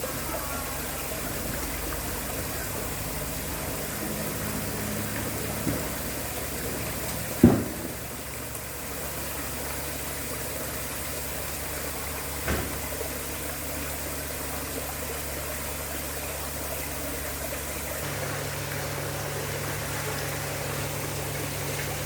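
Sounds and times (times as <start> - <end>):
electric pump humming: 0.0 - 22.0
water splashing down waterfall: 0.0 - 22.0
brief knock: 7.4 - 8.0, 12.4 - 12.8.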